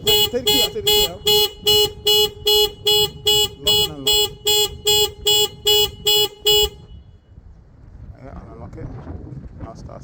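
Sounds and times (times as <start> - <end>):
car alarm beeping: 0.0 - 7.3.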